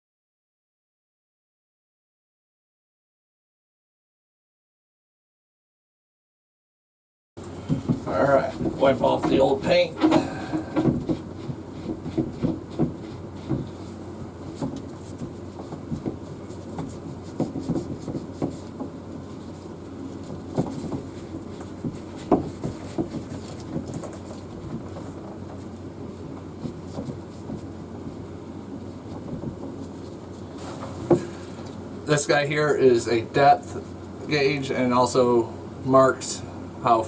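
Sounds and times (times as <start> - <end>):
low hum: 7.4 - 12.0
knocks and taps of tools: 7.7 - 13.9.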